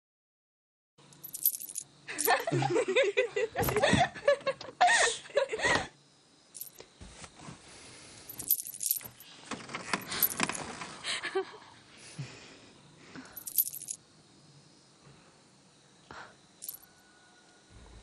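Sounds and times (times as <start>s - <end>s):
light metallic clinks and rattles: 1.1s - 2.5s, 6.6s - 6.8s, 8.3s - 9.2s, 9.8s - 10.7s, 13.3s - 14.0s, 16.6s - 16.9s
people laughing: 2.2s - 5.9s.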